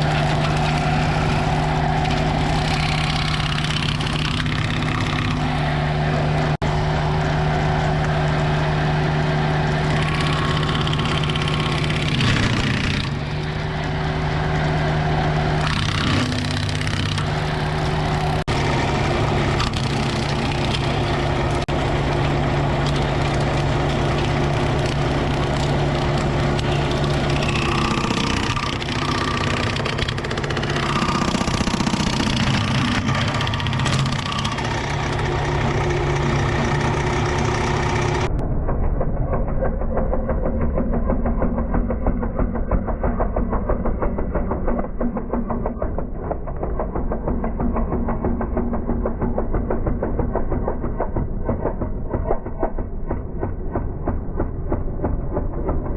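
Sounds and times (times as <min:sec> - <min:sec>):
rotary cutter cutting brush: 0:00.0 - 0:06.6, 0:09.6 - 0:38.4
tractor engine running: 0:00.0 - 0:55.9.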